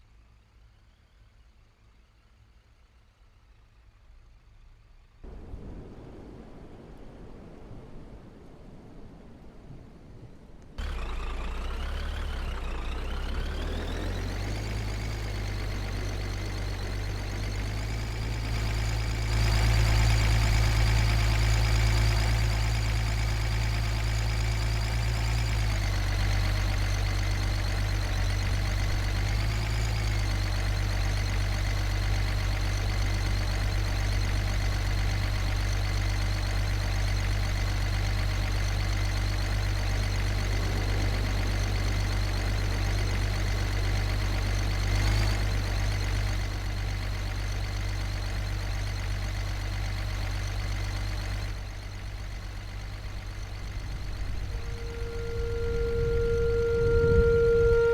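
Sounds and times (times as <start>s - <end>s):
vehicle engine running: 10.8s - 57.9s.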